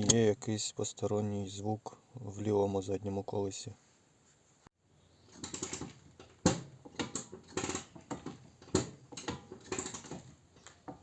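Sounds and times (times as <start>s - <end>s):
clicking and knocking from brake: 5.4s - 11.0s.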